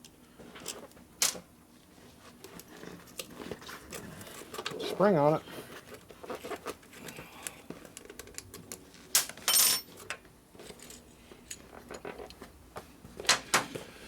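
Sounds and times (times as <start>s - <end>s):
metal tools clinking: 9.4s - 9.9s.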